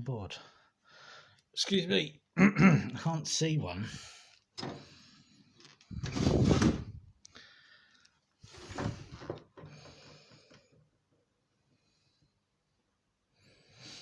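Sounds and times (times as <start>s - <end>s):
scraping and knocking: 5.8s - 7.0s.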